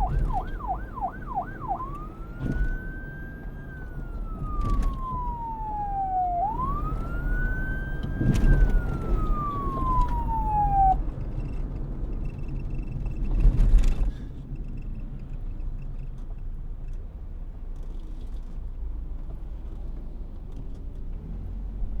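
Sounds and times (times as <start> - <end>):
police siren wail: 0.0 - 11.6.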